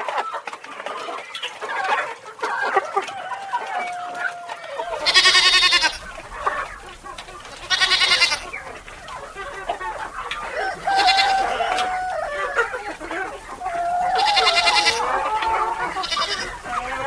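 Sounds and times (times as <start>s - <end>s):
farm animal bleating: 4.8s - 17.0s.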